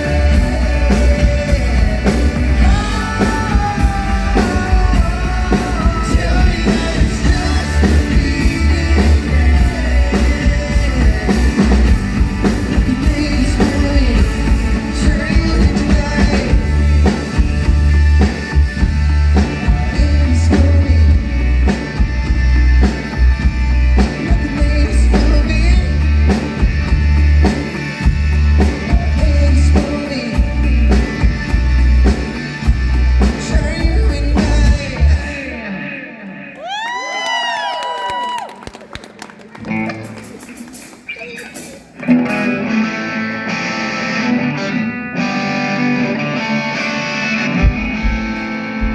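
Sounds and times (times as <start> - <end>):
man singing: 0.0 - 17.7, 18.6 - 22.4, 23.4 - 26.8, 28.6 - 32.4, 33.2 - 36.7
live pop-rock band: 0.0 - 48.9.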